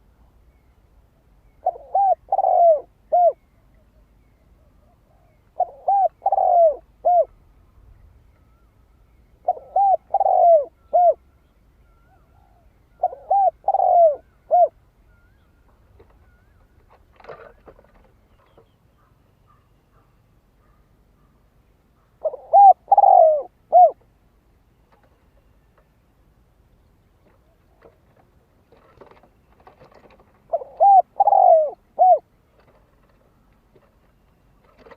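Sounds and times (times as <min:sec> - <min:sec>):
dove cooing: 0:01.4 - 0:04.0, 0:04.6 - 0:07.4, 0:09.4 - 0:21.3, 0:22.0 - 0:24.1, 0:27.2 - 0:34.0, 0:34.6 - 0:34.9
faint rustle: 0:14.0 - 0:22.4, 0:23.9 - 0:34.9.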